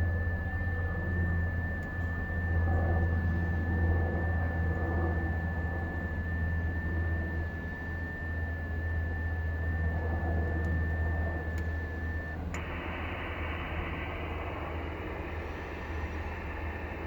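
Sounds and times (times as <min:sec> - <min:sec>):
strong low hum: 0:00.0 - 0:17.0
steady high digital tone: 0:08.0 - 0:17.0
radio band noise hiss: 0:12.4 - 0:17.0.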